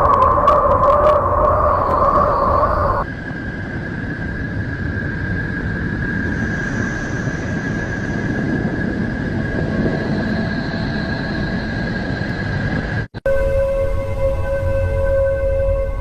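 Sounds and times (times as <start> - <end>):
faint high tones: 0.0 - 3.1
high whistle: 0.0 - 3.1, 13.3 - 16.0
dense rumbling noise: 0.0 - 6.3.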